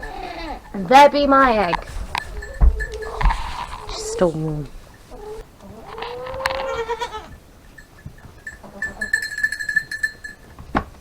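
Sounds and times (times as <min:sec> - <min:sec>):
goat bleating: 0:00.0 - 0:07.4, 0:08.5 - 0:09.6.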